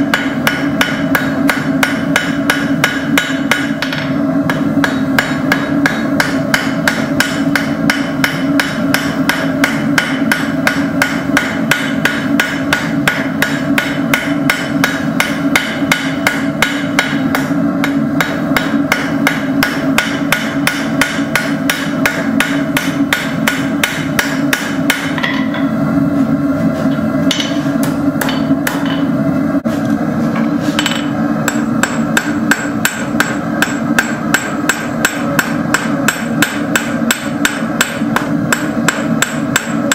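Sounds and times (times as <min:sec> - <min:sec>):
hammer striking steel on anvil: 0:00.0 - 0:25.8, 0:27.3 - 0:29.1, 0:30.8 - 0:39.9
steady hum: 0:00.0 - 0:39.9.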